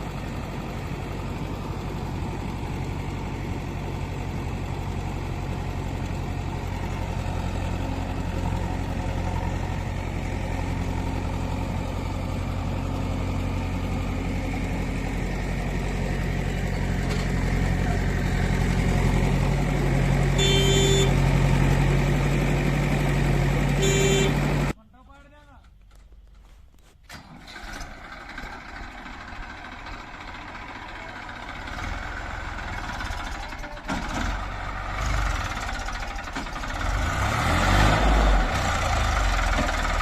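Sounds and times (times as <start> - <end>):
diesel engine running: 0.0 - 24.8, 27.1 - 40.0
short beep: 20.4 - 21.2, 23.8 - 24.4.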